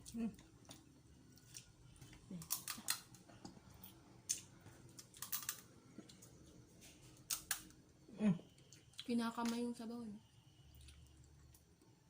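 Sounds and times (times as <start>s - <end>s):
seafood shells cracking: 2.3s - 3.2s, 4.3s - 6.3s, 7.3s - 7.7s.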